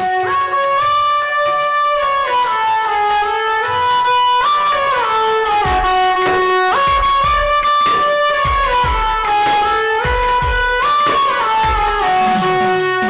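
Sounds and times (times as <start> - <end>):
gliding sustained melody: 0.0 - 13.0
low drum beats: 5.5 - 13.0.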